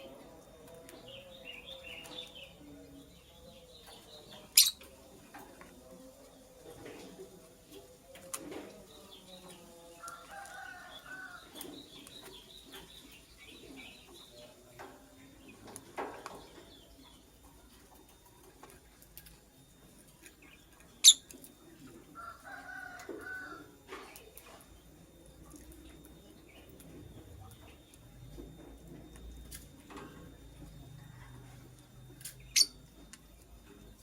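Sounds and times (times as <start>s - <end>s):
lovebird chirping: 3.8s - 4.8s.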